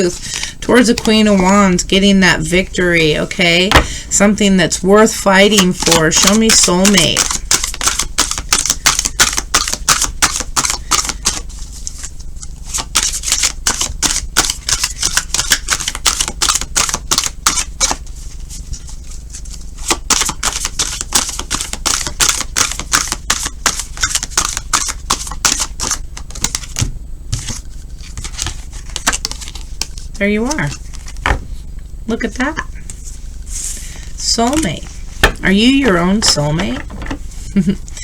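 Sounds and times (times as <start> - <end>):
cards being shuffled: 5.4 - 31.4.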